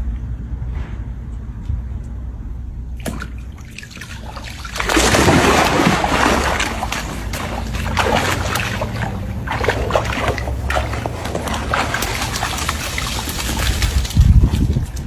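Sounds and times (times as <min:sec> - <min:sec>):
steady low rumble: 0:00.0 - 0:15.0
water splashing: 0:03.0 - 0:15.0.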